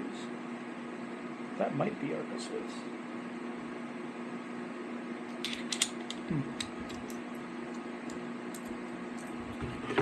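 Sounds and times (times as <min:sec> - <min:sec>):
steady low hum: 0:00.0 - 0:10.0
clicks of small parts handled: 0:05.3 - 0:09.3.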